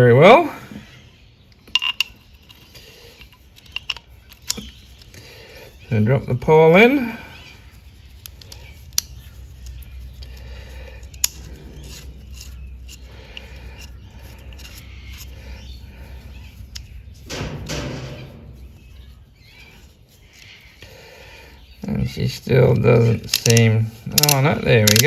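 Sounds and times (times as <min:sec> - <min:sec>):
small metal clicks: 0:01.5 - 0:05.2, 0:07.8 - 0:20.9, 0:22.3 - 0:25.0.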